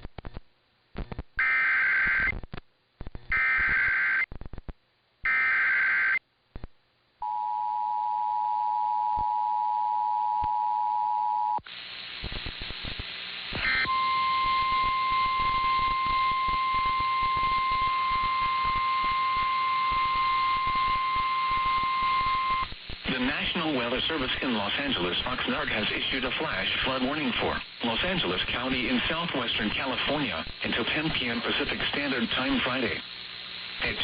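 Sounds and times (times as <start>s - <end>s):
static hiss: 0.0s - 6.7s, 11.6s - 34.0s
steady single alarm tone: 13.7s - 22.6s.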